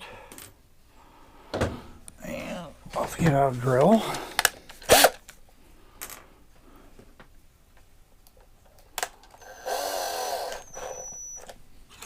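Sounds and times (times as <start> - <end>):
power drill running: 4.9 - 5.2, 9.4 - 11.5.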